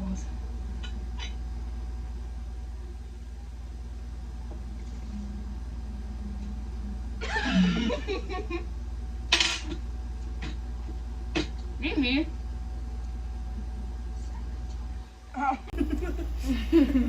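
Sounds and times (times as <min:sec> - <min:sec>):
steady low hum: 0:00.0 - 0:17.0
person giggling: 0:07.2 - 0:08.6, 0:15.8 - 0:17.0.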